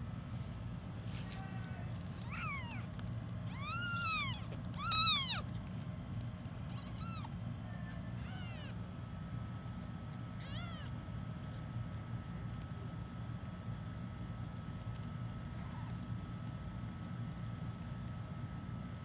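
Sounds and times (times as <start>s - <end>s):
kittens mewing: 1.8s - 5.6s, 6.6s - 8.8s, 10.3s - 11.0s.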